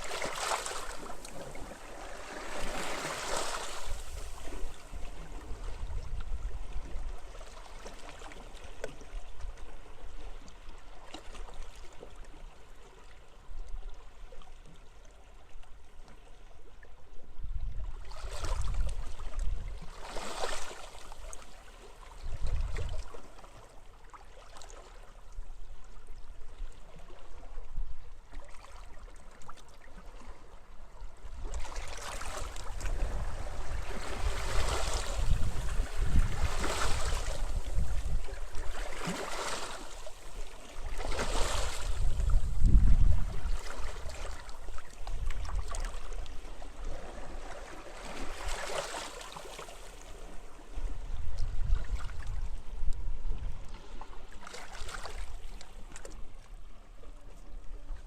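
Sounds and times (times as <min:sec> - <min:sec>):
waves washing onto beach: 0:00.0 - 0:05.5, 0:32.0 - 0:42.6
wind: 0:00.0 - 0:58.0.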